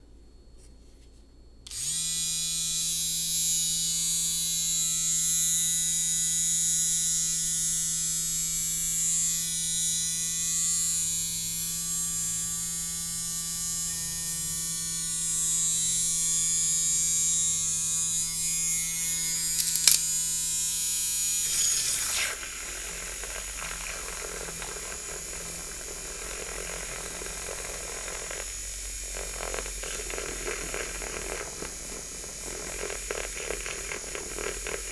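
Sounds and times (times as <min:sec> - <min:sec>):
milk frother motor whirring: 0:06.7 - 0:20.1, 0:20.8 - 0:34.9
frothing hiss: 0:21.4 - 0:34.9.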